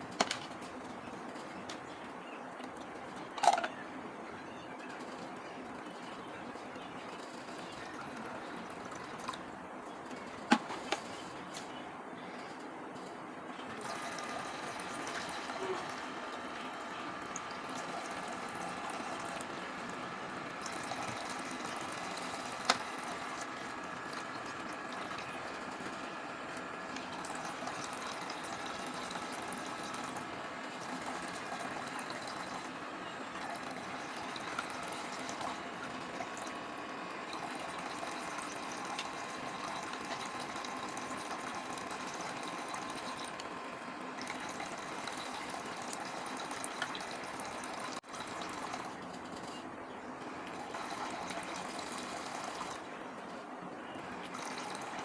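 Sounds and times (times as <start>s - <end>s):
running water: 0.0s - 11.7s, 13.7s - 49.5s, 50.2s - 55.0s.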